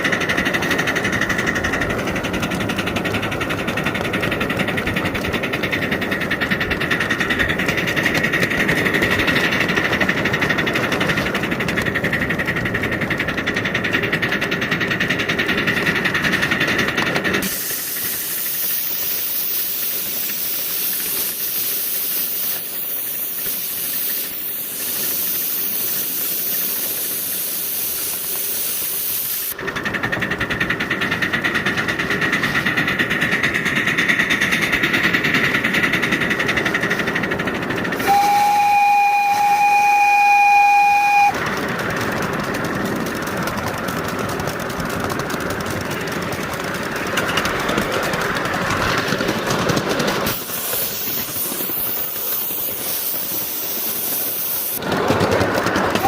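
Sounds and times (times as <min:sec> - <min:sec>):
steam locomotive running: 0:00.0 - 0:56.0
loud high steam hiss: 0:04.6 - 0:42.0, 0:50.0 - 0:55.0.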